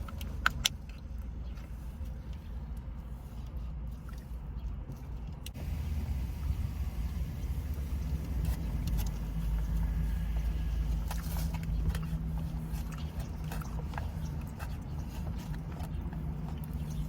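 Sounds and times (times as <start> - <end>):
car engine rumble in cabin: 4.4 - 17.0
person eating and chewing: 8.3 - 17.0.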